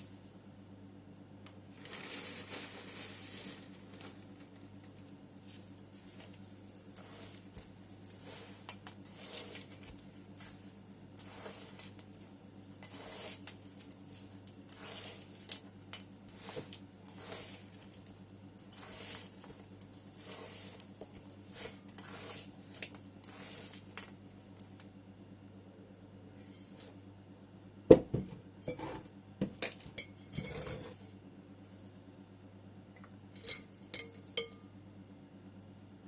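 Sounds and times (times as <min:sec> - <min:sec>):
potting soil rustling: 0:01.8 - 0:24.7.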